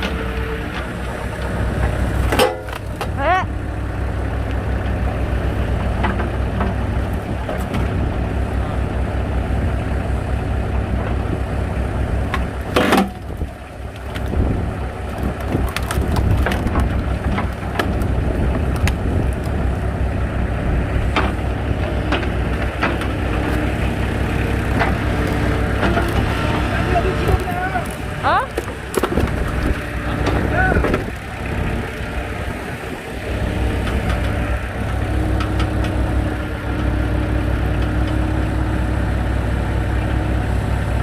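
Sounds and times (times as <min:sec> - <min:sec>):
firewood cracking as it splits: 0:00.0 - 0:03.2, 0:12.2 - 0:20.2, 0:21.0 - 0:38.4
engine running steadily: 0:00.0 - 0:41.0.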